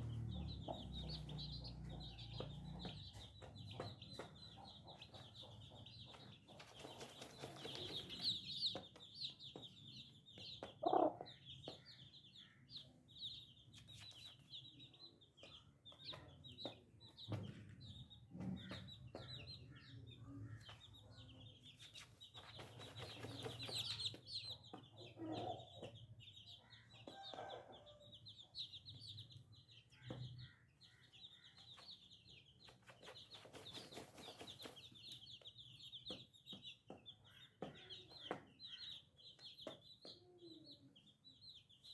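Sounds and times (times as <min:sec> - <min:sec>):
baby chicks peeping: 0:00.0 - 0:41.9
hen clucking: 0:10.8 - 0:11.3.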